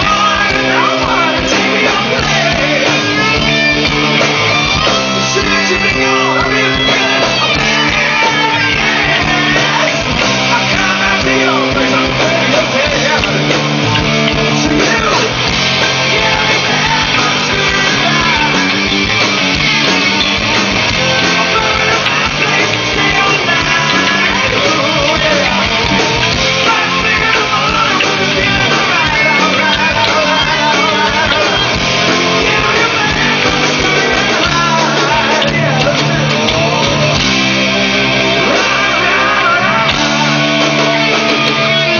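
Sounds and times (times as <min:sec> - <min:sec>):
live rock band with electric guitars: 0:00.0 - 0:41.9.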